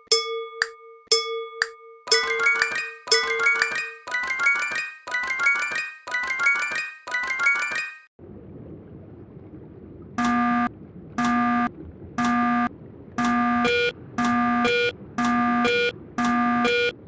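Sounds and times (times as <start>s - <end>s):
low steady hum: 8.2s - 17.0s
electronic beep: 10.2s - 17.0s
short higher beep: 11.2s - 17.0s.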